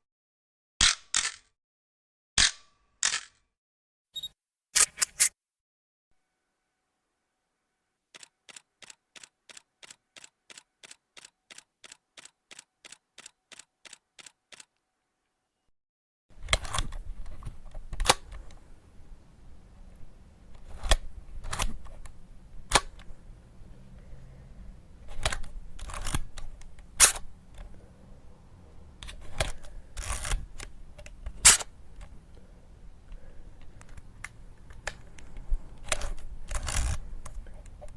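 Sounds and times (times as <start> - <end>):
camera shutter clicks: 0.8 - 1.5, 2.4 - 3.4, 4.8 - 5.3, 25.1 - 27.3, 29.0 - 30.7, 31.3 - 31.7, 35.8 - 37.0.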